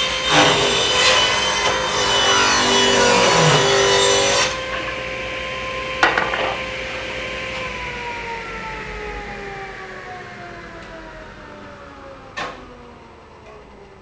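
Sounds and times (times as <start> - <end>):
table saw winding down: 0.0 - 14.0
knock: 6.0 - 6.6.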